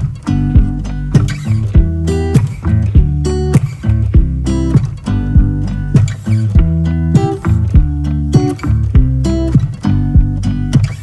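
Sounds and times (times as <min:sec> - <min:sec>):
plucked guitar music with beat: 0:00.0 - 0:11.0.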